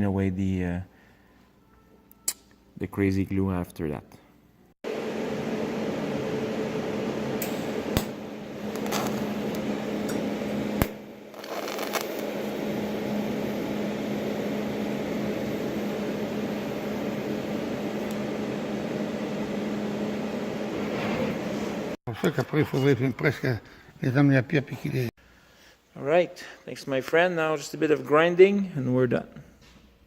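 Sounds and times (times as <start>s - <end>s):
welding arc buzzing hum: 4.9s - 22.0s.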